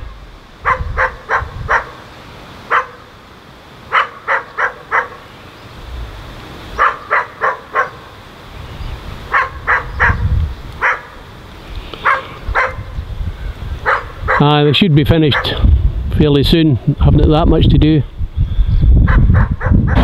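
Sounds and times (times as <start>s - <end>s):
low rumble: 0.0s - 1.6s, 5.8s - 6.5s
dog barking: 0.6s - 2.0s, 2.7s - 3.1s, 3.9s - 5.2s, 6.8s - 8.1s, 9.3s - 10.2s, 10.8s - 11.2s, 12.0s - 12.9s, 13.8s - 14.5s, 15.3s - 15.6s, 19.1s - 20.0s.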